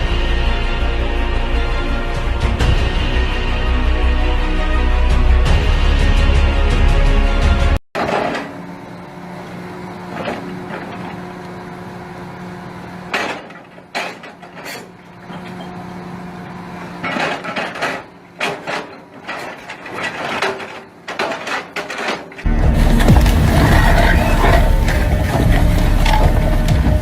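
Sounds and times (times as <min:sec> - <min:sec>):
heavy machine engine humming: 0:08.3 - 0:27.0
debris crashing: 0:17.0 - 0:27.0
wood cracking: 0:17.1 - 0:27.0.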